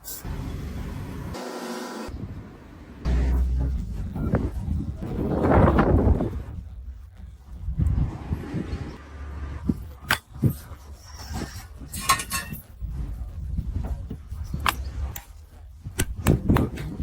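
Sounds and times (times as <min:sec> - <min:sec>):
low rumble: 0:02.1 - 0:11.0
metal tools clinking and knocking: 0:11.2 - 0:12.8.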